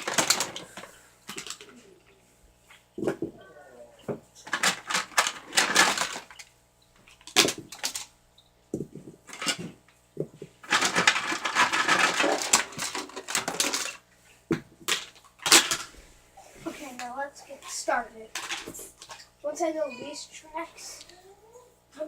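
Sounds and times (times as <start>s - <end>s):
toy train track pieces clattering: 0.0s - 1.7s, 4.5s - 6.5s, 7.2s - 8.1s, 10.7s - 14.0s, 14.9s - 15.9s, 18.4s - 19.2s.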